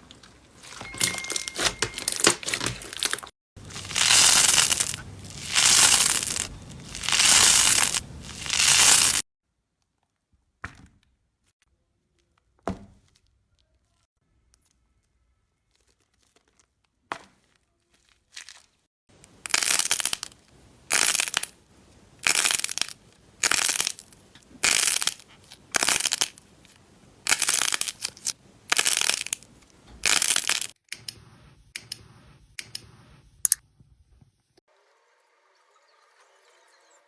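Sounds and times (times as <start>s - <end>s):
slime squeezed by hand: 2.9s - 9.2s.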